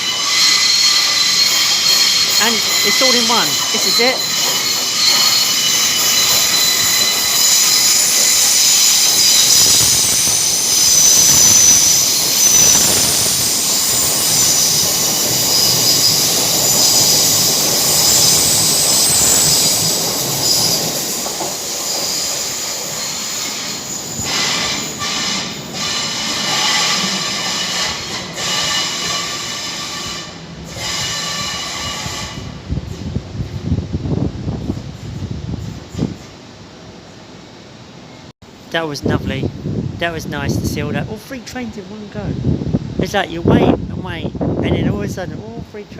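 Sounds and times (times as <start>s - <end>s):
train wheels squealing on rails: 0.0s - 33.1s.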